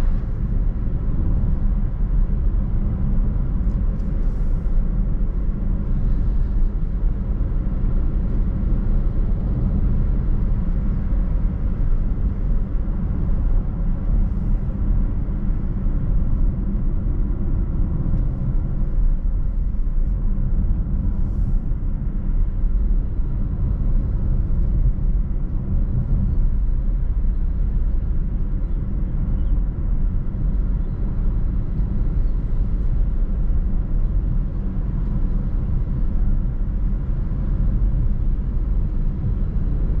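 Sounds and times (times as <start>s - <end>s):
car engine and road noise: 0.0s - 40.0s.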